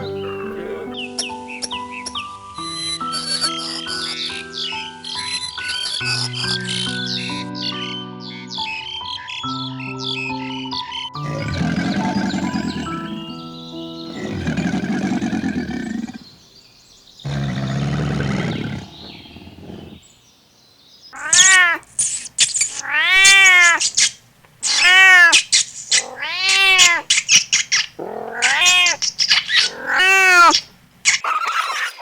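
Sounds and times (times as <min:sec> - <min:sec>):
cat meowing: 0:00.0 - 0:01.0, 0:21.2 - 0:32.0
rough low animal calls: 0:00.0 - 0:01.0, 0:11.2 - 0:13.5, 0:14.1 - 0:16.4, 0:17.2 - 0:20.0.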